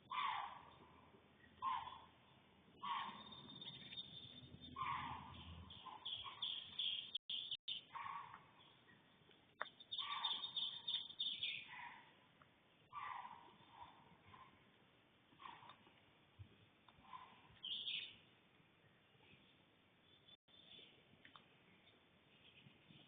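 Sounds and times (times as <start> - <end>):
bobcat calling: 0.0 - 0.7, 2.8 - 3.9, 4.7 - 6.8.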